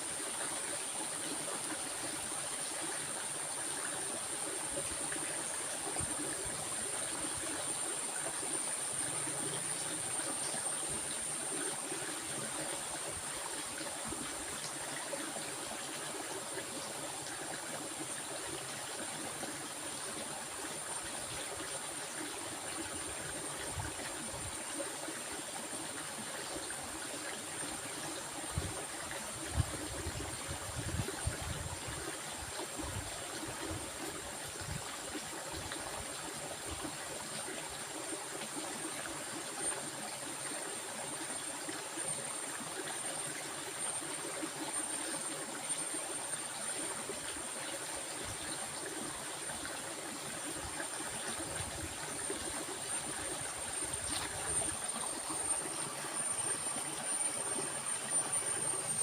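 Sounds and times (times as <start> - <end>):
stream water running: 0.0 - 59.0
thin steady high tone: 51.6 - 59.0.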